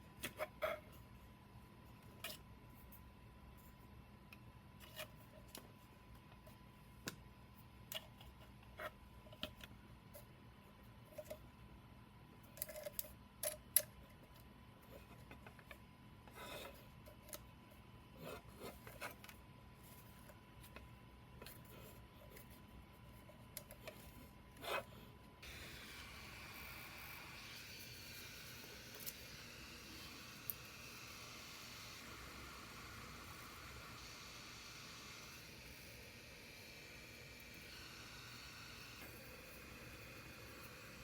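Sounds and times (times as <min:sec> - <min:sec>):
faint steady hum: 0:00.0 - 0:41.0
steady hiss: 0:25.4 - 0:41.0.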